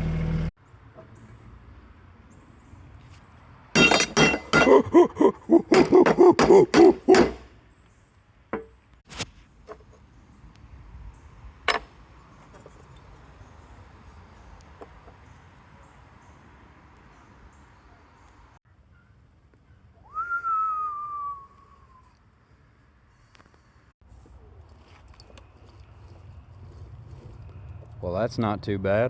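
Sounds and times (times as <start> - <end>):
hammer striking metal: 3.8 - 4.9, 5.7 - 7.5.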